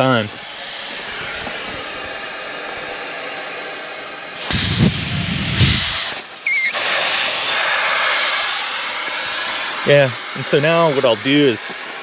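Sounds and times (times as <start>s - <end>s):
air hissing out of tires: 0.0s - 12.0s
short high squeal: 4.5s - 8.4s.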